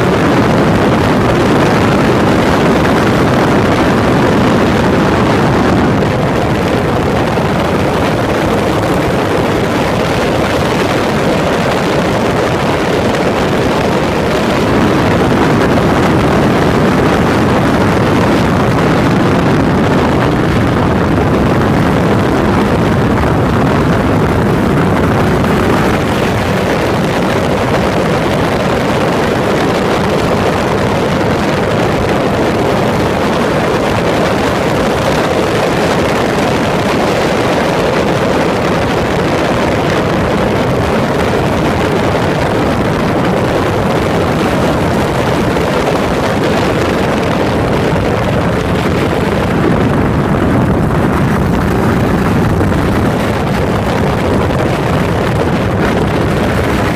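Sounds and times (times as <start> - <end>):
motorcycle engine running: 0.0 - 56.9
wind noise on microphone: 0.0 - 56.9.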